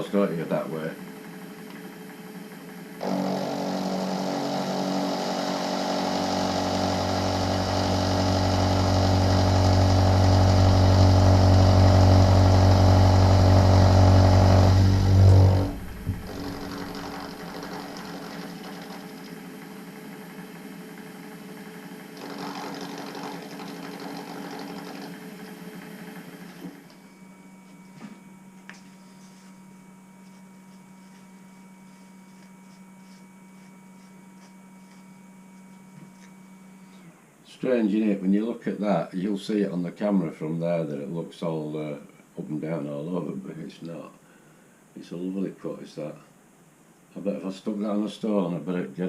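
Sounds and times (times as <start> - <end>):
machine hum: 0.9 - 37.4
milling machine cutting metal: 3.0 - 19.5, 22.1 - 26.8.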